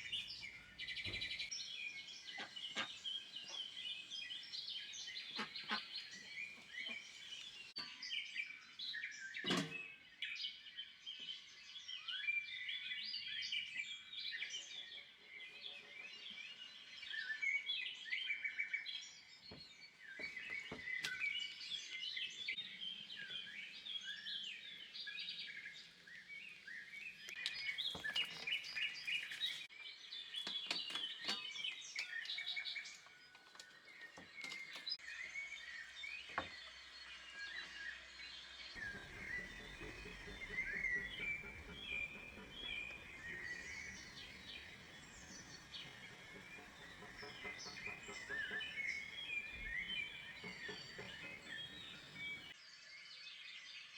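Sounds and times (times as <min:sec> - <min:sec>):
songbirds chirping and singing: 0:00.0 - 0:09.8, 0:38.3 - 0:52.5
scattered clicks and taps: 0:38.8 - 0:52.5.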